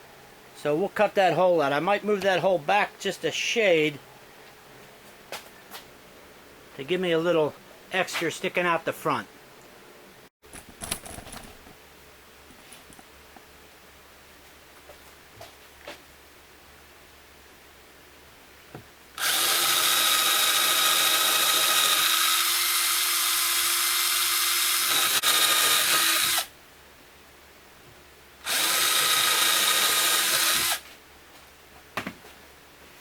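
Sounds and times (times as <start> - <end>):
electric drill whining: 19.2 - 26.5, 28.4 - 30.8.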